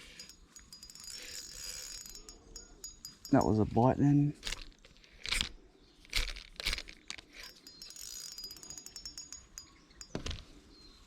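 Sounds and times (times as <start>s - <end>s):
fishing reel clicking rapidly: 0.0s - 3.4s, 6.1s - 9.7s.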